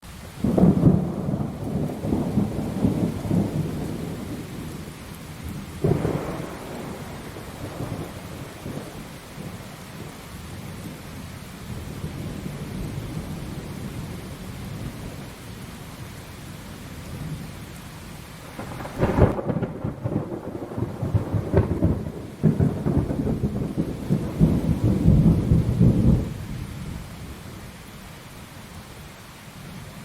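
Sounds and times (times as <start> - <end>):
steady rain: 0.0 - 30.0
thunder rumbling and cracking: 0.4 - 11.0, 18.4 - 27.0.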